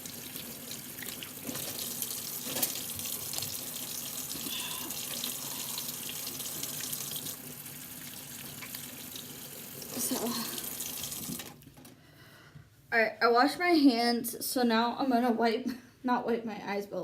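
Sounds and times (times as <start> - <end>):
hands washing under water: 0.0 - 11.6
tap water running: 0.0 - 11.8.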